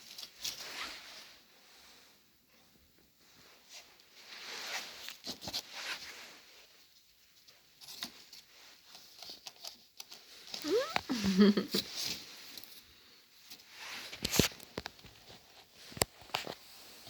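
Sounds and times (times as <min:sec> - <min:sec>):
cat scratching and rustling: 0:03.7 - 0:10.6.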